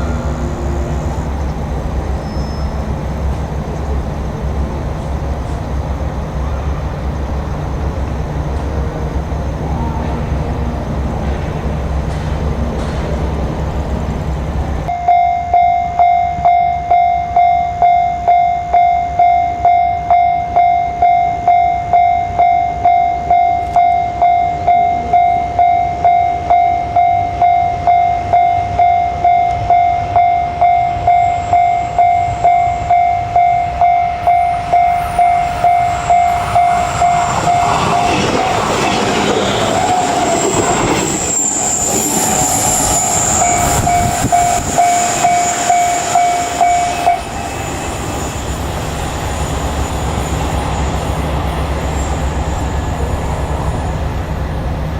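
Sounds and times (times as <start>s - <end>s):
approaching train running noise: 0.0s - 54.9s
level crossing warning bell: 14.9s - 38.4s, 41.7s - 47.7s.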